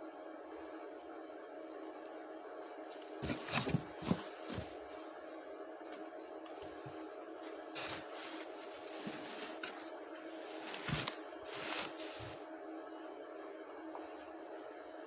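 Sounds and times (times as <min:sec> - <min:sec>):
steady hum: 0:00.0 - 0:15.0
short rustles: 0:03.2 - 0:05.0, 0:07.8 - 0:12.4.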